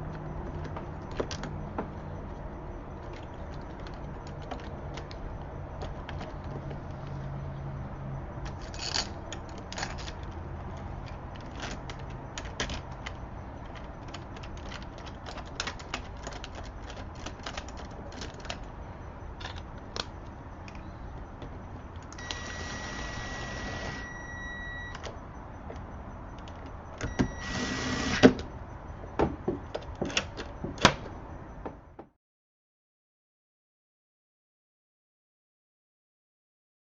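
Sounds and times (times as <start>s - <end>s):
lock hardware clicks and rattling: 0.1s - 7.1s, 8.4s - 22.4s, 28.2s - 31.2s
short whirring bursts: 22.2s - 25.0s, 27.1s - 28.4s.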